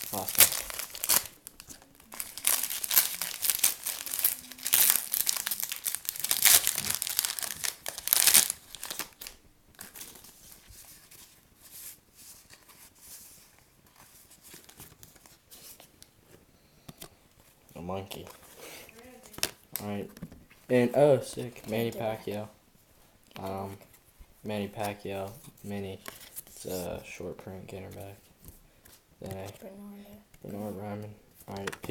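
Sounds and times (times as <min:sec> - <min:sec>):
wrapper tearing and crinkling: 0:00.0 - 0:10.2
faint rustling of cards: 0:00.0 - 0:31.9.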